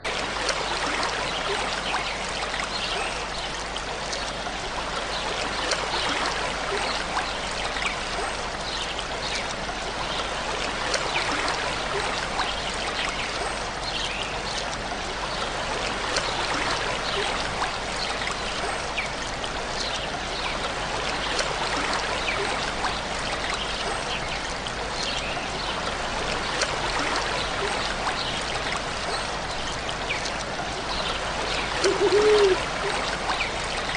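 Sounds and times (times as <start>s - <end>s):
small waterfall rushing: 0.0s - 33.9s.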